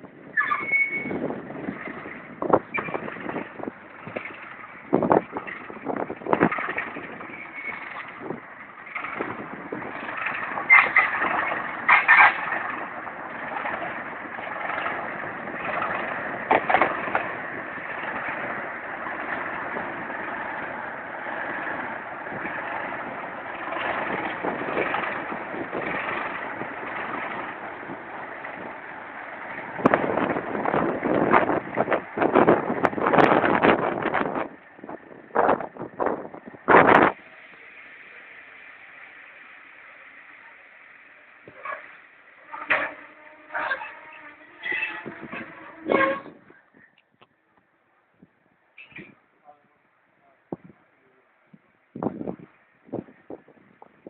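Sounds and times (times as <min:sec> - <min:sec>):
train clattering: 0:00.0 - 0:47.7
train wheels rumbling on rail: 0:00.0 - 0:49.3, 0:50.3 - 0:54.0.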